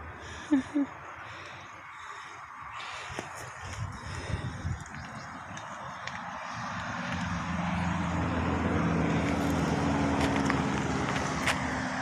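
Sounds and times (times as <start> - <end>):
vehicle engine passing by: 5.7 - 12.0.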